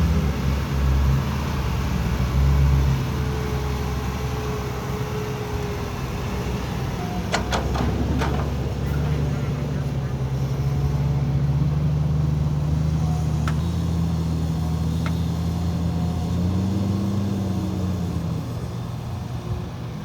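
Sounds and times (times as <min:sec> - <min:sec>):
heavy diesel machinery running: 0:00.0 - 0:20.0.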